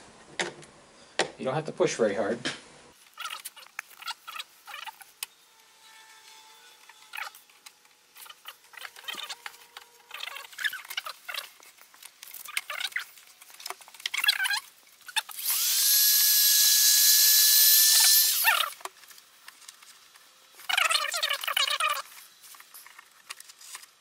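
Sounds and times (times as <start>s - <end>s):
plastic razor blade squeaking: 3.1s - 5.4s, 6.8s - 15.5s, 17.3s - 19.0s, 20.6s - 23.5s
electric power tool whining: 15.2s - 18.8s.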